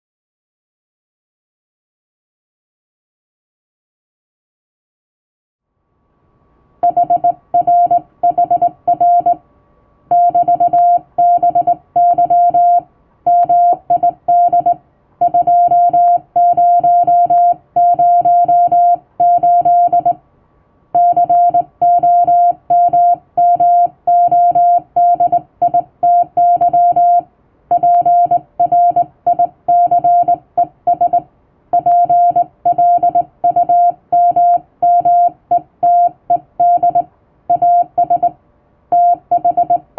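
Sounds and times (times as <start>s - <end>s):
morse code tone: 6.8s - 9.4s, 10.1s - 20.2s, 21.0s - 31.2s, 31.8s - 39.9s.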